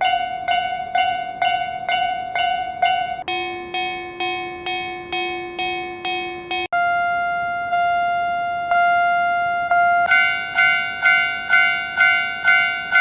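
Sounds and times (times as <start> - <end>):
level crossing warning bell: 0.0 - 6.7, 9.7 - 13.0.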